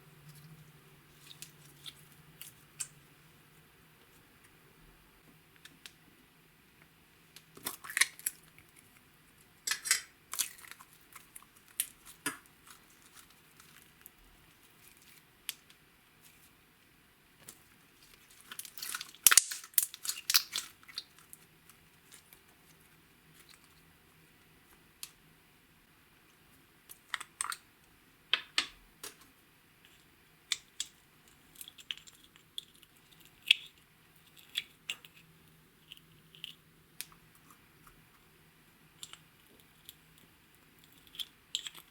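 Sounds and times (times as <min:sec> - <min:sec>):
slime crackling and popping: 0:07.4 - 0:08.8, 0:09.6 - 0:15.8, 0:17.4 - 0:22.4.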